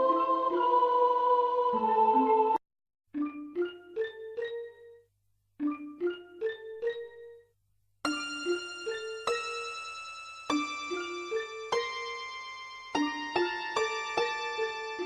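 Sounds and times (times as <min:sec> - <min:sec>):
slow keyboard melody: 0:03.2 - 0:07.5, 0:08.1 - 0:15.0.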